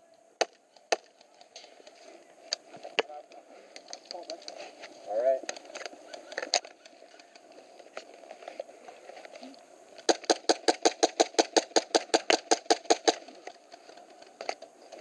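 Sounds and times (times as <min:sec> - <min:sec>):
airsoft gun firing rapidly: 0:10.1 - 0:13.2.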